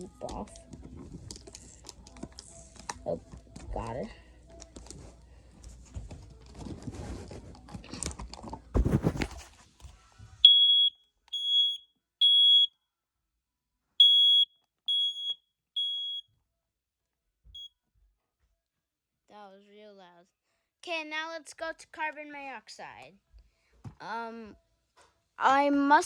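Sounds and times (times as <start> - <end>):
handling and rustling: 4.5 - 9.8
smoke detector beeping: 10.5 - 12.7, 14.0 - 16.2.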